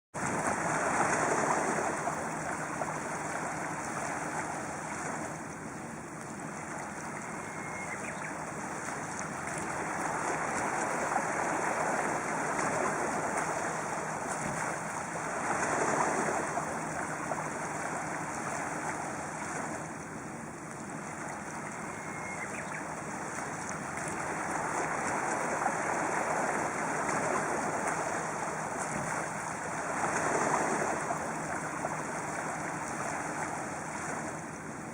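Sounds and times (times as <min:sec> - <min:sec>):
sea waves on rocky shore: 0:00.2 - 0:34.9
bird singing: 0:07.1 - 0:08.4, 0:21.5 - 0:23.0.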